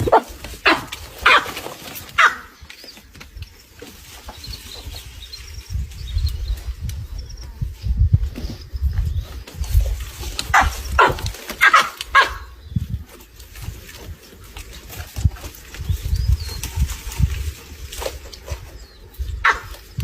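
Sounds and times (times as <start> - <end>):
dog barking: 0.0 - 1.5, 2.2 - 2.5, 10.5 - 12.5, 19.4 - 19.6.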